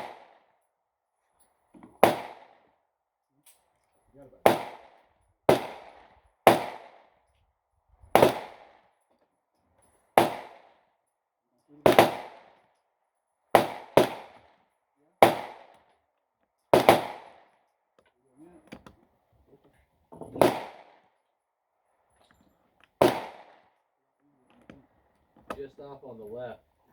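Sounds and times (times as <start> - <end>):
gunshots with echo: 0.0 - 0.3, 2.0 - 2.6, 4.4 - 7.0, 8.1 - 8.7, 10.2 - 10.7, 11.8 - 12.5, 13.5 - 14.4, 15.2 - 15.7, 16.7 - 17.4, 20.4 - 21.0, 23.0 - 23.6.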